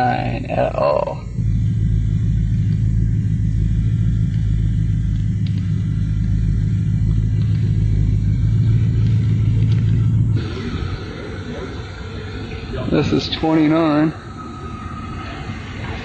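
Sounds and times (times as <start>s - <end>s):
car engine: 0.0s - 16.0s
road noise: 0.0s - 16.0s.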